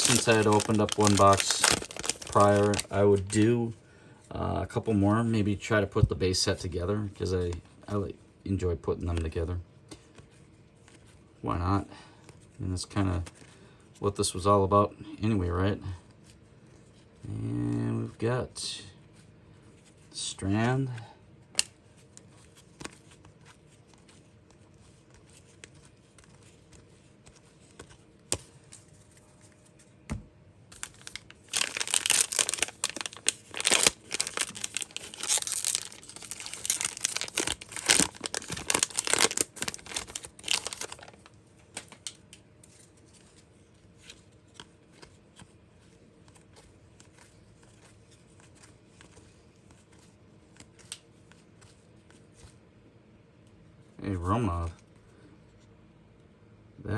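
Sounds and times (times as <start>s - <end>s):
wrapper tearing and crinkling: 0.0s - 3.4s, 30.7s - 42.0s.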